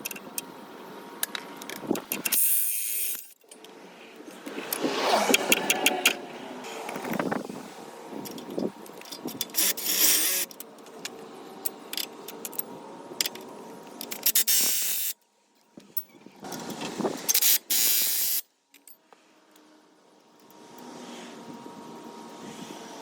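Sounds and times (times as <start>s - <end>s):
metal tools clinking and scraping: 15.8s - 19.1s.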